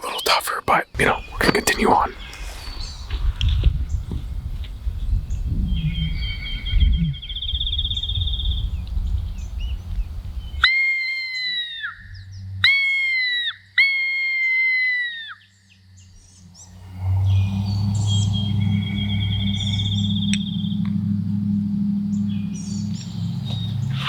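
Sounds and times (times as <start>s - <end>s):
long loud bird calls: 0.0s - 3.2s, 10.5s - 24.0s
wind rumble: 0.9s - 10.7s, 16.5s - 24.0s.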